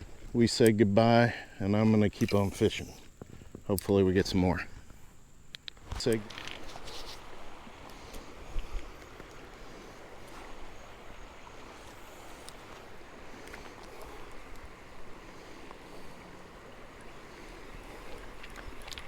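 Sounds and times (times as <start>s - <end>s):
river water flowing: 6.2s - 19.0s.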